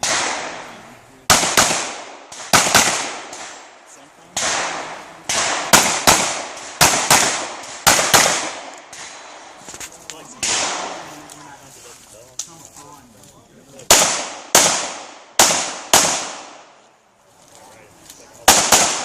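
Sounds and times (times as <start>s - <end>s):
pistol shots echoing: 0.0s - 9.6s, 10.4s - 11.0s, 13.9s - 16.8s, 18.4s - 19.0s.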